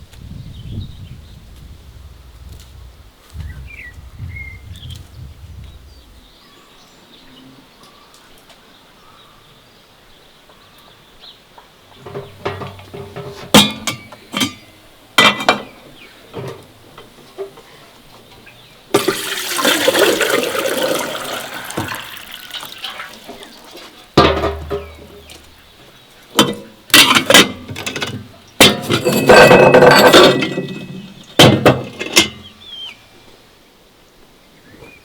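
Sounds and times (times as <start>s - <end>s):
water pouring and splashing: 19.0s - 25.0s.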